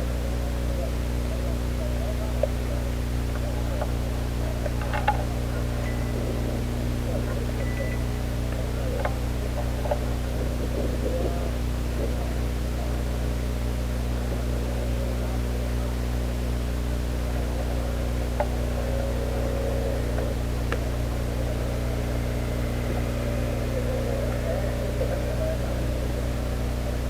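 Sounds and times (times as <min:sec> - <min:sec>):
faint distant voices: 0:00.0 - 0:27.0
low hum: 0:00.0 - 0:27.0
faint clicks: 0:02.3 - 0:12.9, 0:17.0 - 0:27.0.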